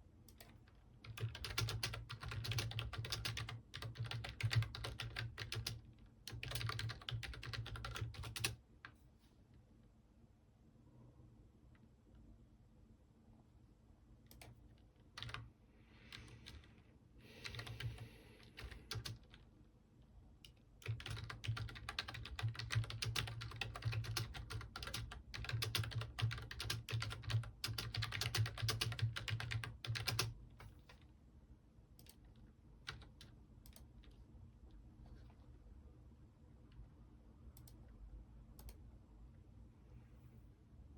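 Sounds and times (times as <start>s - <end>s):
keyboard typing: 0.3s - 8.6s, 14.3s - 15.5s, 17.4s - 19.4s, 20.4s - 31.0s, 32.0s - 34.2s.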